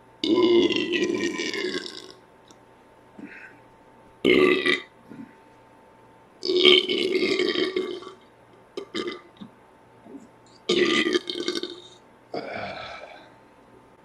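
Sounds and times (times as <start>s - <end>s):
man burping: 0.2s - 2.2s, 4.2s - 4.9s, 6.4s - 8.2s, 8.8s - 9.3s, 10.7s - 13.3s.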